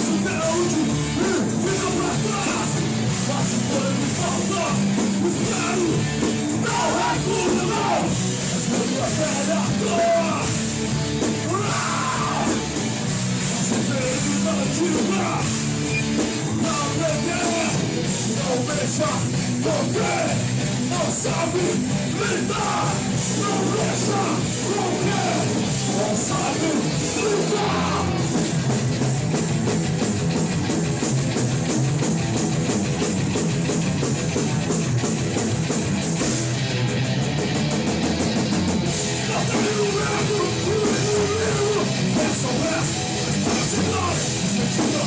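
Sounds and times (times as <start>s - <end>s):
shouted vocals: 0.0s - 8.2s, 11.4s - 12.6s, 16.6s - 28.3s, 39.2s - 45.0s
punk band playing live: 0.0s - 45.0s.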